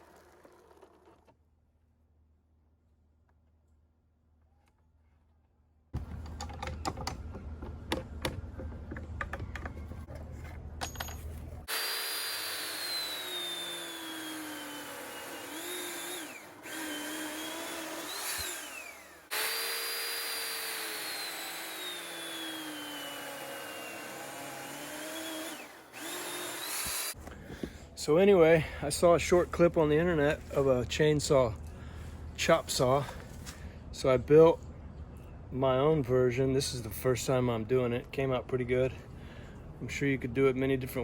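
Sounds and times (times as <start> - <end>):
electric chainsaw cutting wood: 11.7 - 27.2.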